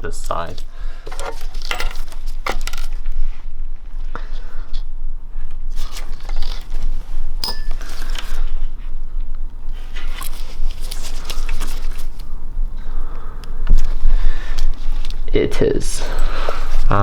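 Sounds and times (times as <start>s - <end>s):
steady low hum: 0.0s - 17.0s
metal parts clicking and scraping: 0.3s - 3.0s, 5.7s - 8.7s.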